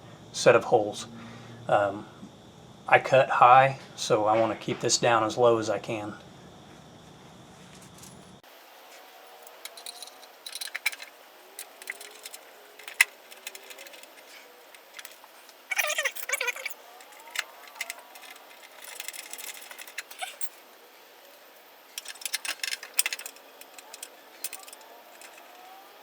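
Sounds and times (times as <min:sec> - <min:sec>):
metal hardware clinking: 0:09.3 - 0:26.0.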